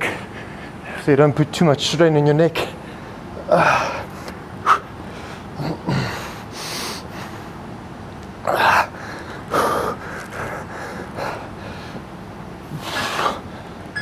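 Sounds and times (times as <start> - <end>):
man breathing hard: 2.8 - 7.6, 8.5 - 12.1.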